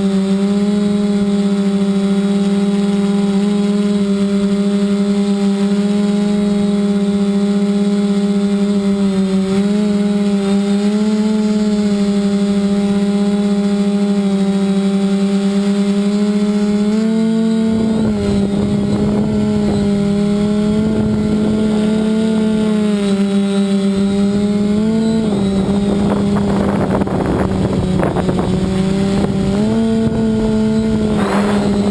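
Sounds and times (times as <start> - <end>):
drone motors humming: 0.0 - 31.9
wind rumbling on microphone: 17.6 - 22.5, 25.1 - 31.9.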